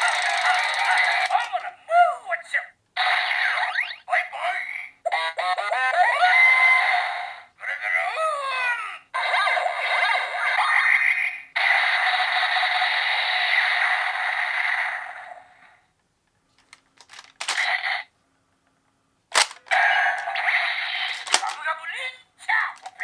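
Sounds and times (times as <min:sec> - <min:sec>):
plastic clicks of toy mechanism: 0:00.0 - 0:01.7, 0:16.6 - 0:17.8, 0:19.3 - 0:20.3, 0:21.1 - 0:21.7, 0:22.8 - 0:23.0
toy gun electronic sound effects: 0:00.0 - 0:01.7, 0:17.1 - 0:18.0, 0:19.3 - 0:21.6, 0:22.8 - 0:23.0.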